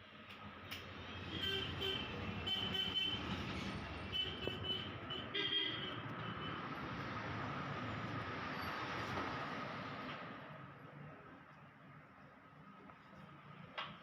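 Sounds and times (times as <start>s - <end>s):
vehicle passing with rumble: 6.0s - 10.5s.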